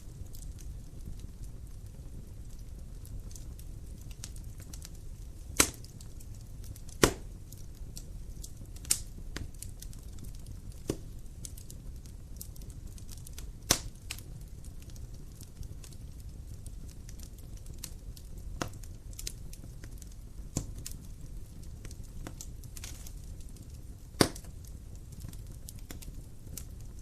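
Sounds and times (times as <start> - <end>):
fire crackling: 0.0 - 27.0
low rumble of flame: 0.0 - 27.0
sharp loud pops: 7.0 - 7.3.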